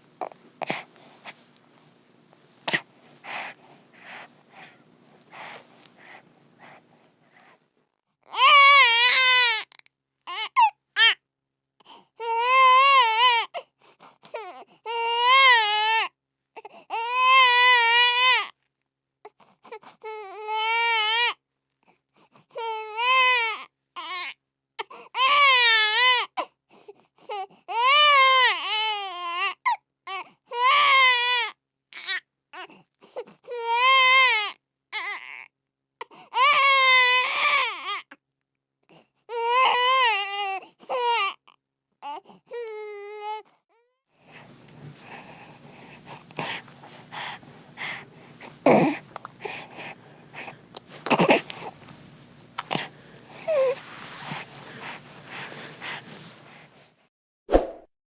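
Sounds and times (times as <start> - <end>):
infant crying: 8.4 - 9.6, 16.9 - 18.4, 25.2 - 26.2, 36.4 - 38.0, 44.3 - 56.6.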